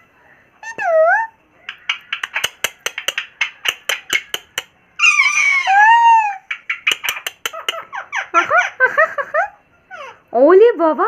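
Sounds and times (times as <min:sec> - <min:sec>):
parrot clicking: 0:01.7 - 0:04.7, 0:06.5 - 0:08.1
parrot drawn-out call: 0:05.0 - 0:08.4.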